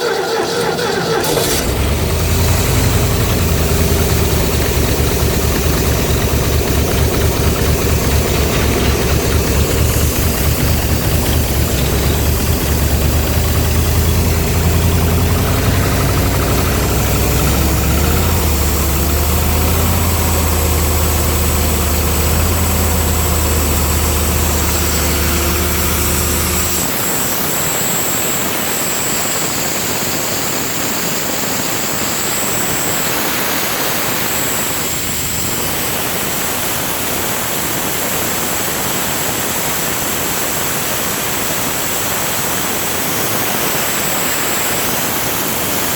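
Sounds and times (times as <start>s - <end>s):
air compressor engine running: 0.0s - 28.3s.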